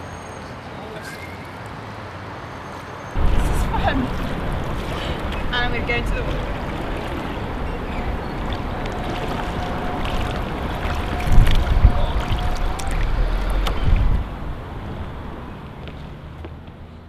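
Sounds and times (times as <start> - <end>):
water splashing around kayak: 3.2 - 15.5
wind rumbling on microphone: 3.2 - 16.1.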